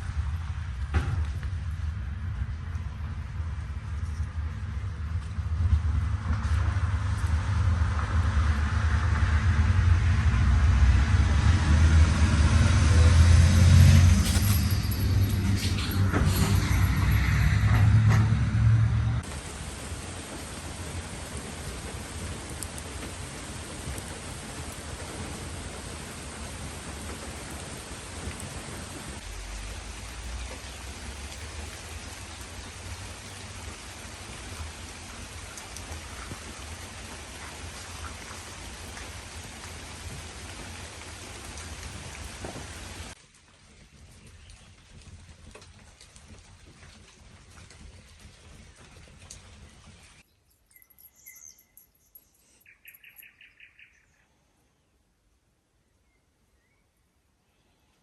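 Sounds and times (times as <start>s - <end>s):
raindrop ticks: 0.0s - 9.2s, 19.2s - 53.6s
low rumble: 0.0s - 23.2s
steady rushing noise: 0.0s - 37.7s
steady rain hiss: 0.0s - 50.2s
songbirds chirping: 48.1s - 55.1s.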